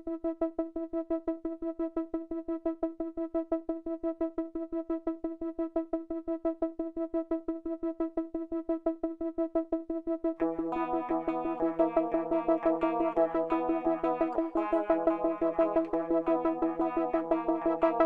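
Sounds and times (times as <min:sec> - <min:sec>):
pulsing synthesizer note: 0:10.4 - 0:18.0.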